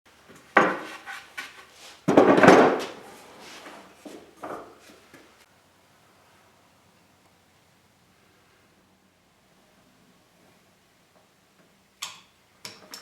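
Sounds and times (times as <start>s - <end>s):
wood knocking and clattering: 0.6s - 1.0s, 2.1s - 3.0s, 4.4s - 4.8s.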